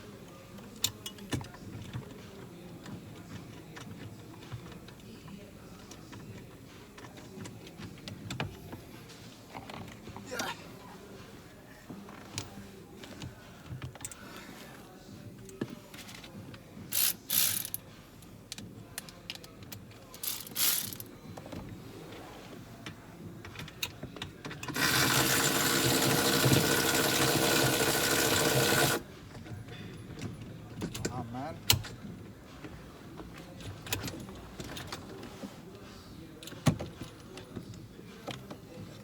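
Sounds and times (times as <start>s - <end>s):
ratchet wrench ratcheting: 16.9s - 17.8s, 20.2s - 21.0s, 24.7s - 29.0s.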